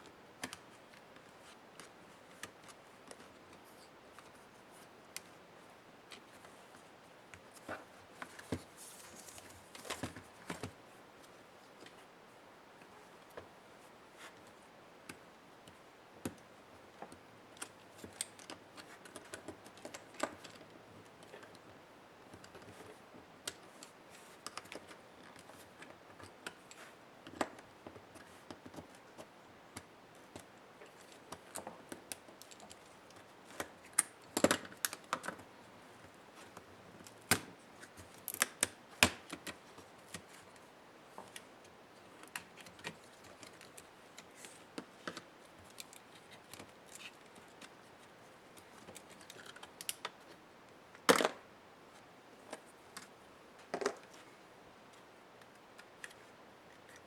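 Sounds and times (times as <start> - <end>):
laptop parts clicking and tapping: 23.5 - 35.4.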